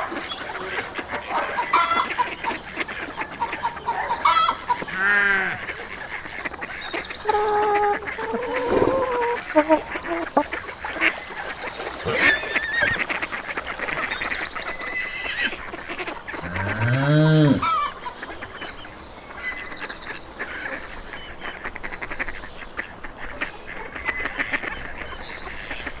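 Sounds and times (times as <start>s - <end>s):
farm animal calls and chirps: 0.0s - 19.7s
cow mooing: 4.9s - 5.7s, 7.2s - 10.4s, 12.0s - 13.1s, 16.4s - 17.8s.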